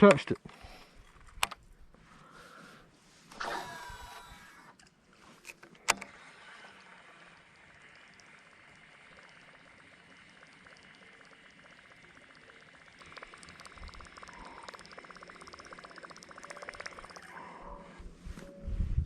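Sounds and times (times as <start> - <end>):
fishing reel ticking: 3.3 - 18.0.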